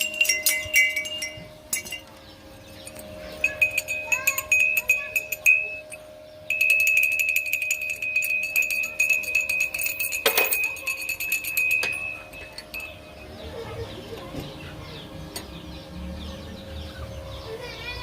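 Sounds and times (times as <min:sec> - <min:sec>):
cow bell ringing: 0:00.0 - 0:14.1.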